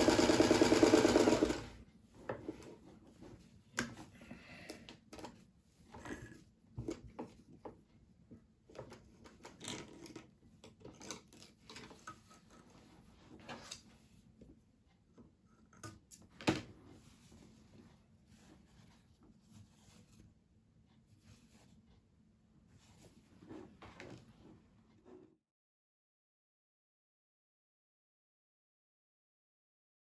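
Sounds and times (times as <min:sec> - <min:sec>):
faint handling clicks and rustles: 0:04.7 - 0:22.0.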